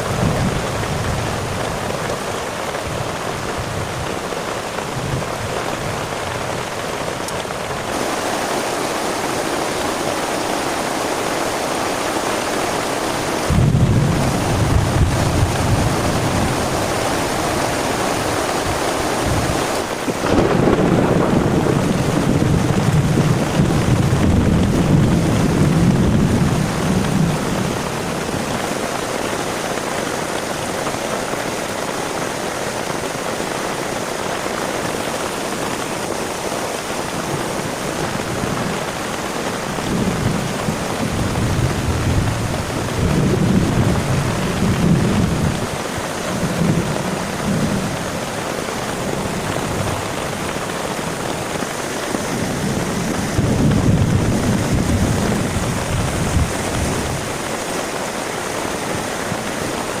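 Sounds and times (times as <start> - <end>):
heavy rain falling: 0.0 - 60.0
thunder rumbling: 12.4 - 28.9, 36.8 - 60.0.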